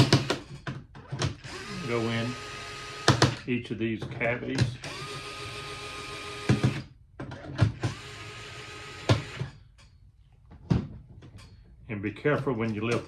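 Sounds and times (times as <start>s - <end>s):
electric screwdriver motor running: 1.2s - 3.4s, 4.7s - 6.9s, 7.7s - 9.5s.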